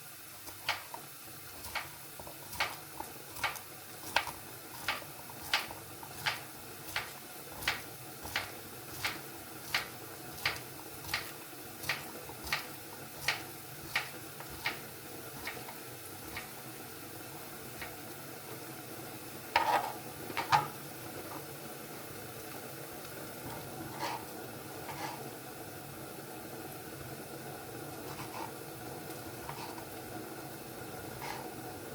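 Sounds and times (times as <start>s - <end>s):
kitchen utensil clatter: 19.6s - 20.7s.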